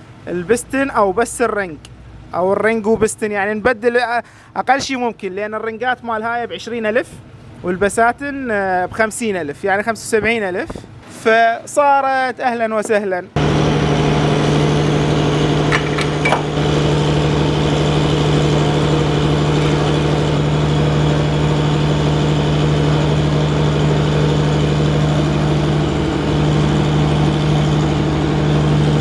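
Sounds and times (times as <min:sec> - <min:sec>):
engine idling: 0:13.4 - 0:29.0.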